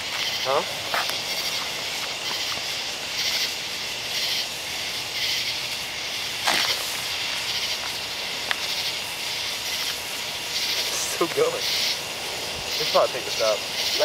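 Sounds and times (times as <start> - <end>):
burning fireworks hissing: 0.0 - 14.0
sharp pop: 6.4 - 6.8.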